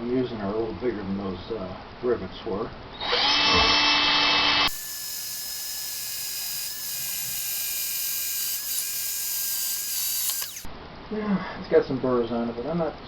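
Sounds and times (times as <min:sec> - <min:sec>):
power drill drilling metal: 0:03.0 - 0:10.7.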